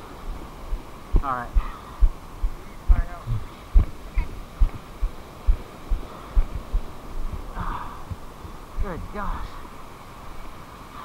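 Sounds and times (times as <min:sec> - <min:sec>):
background hiss: 0:00.0 - 0:11.0
low thumps on microphone: 0:01.1 - 0:08.3.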